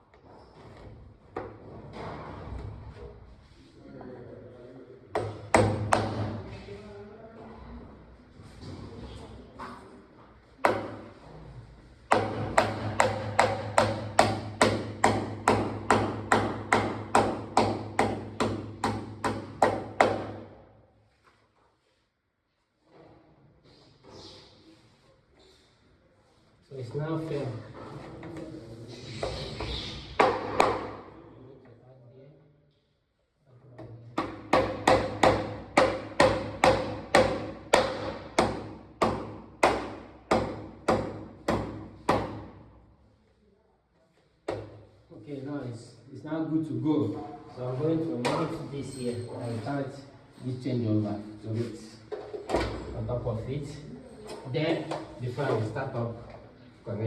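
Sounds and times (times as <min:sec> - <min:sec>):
hammer striking a nail: 0:05.2 - 0:06.4, 0:12.1 - 0:20.5, 0:34.2 - 0:42.5.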